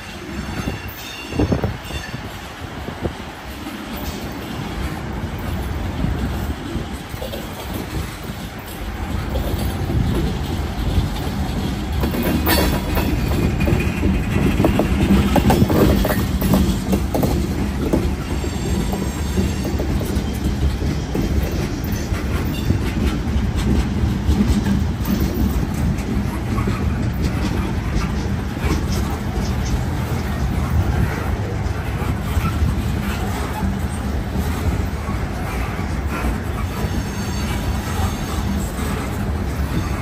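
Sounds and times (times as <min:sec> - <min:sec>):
freight train rumbling past: 0:00.0 - 0:40.0
wheels clicking over rail joints: 0:00.0 - 0:40.0.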